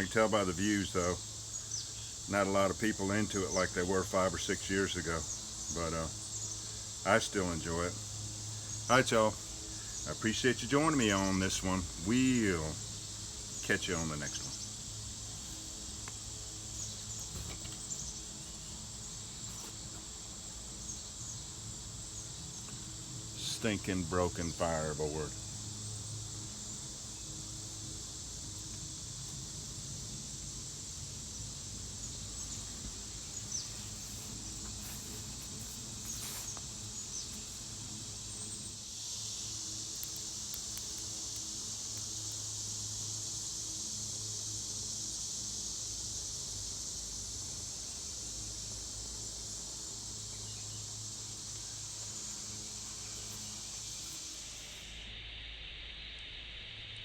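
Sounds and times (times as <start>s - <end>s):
insects trilling: 0.0s - 57.0s
small clicks: 39.9s - 42.4s.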